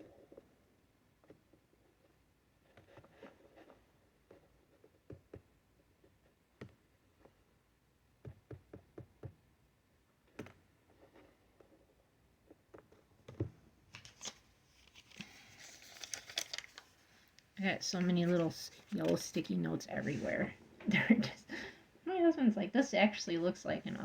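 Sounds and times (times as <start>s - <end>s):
crinkly rustle: 14.0s - 20.6s.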